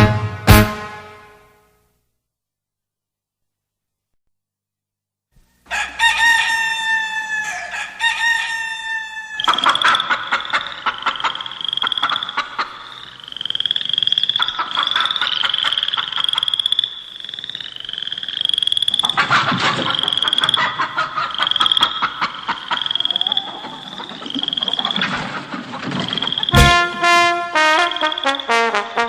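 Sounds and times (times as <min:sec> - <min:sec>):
synthesized frog croaks: 0:09.4 - 0:27.0, 0:27.6 - 0:28.7.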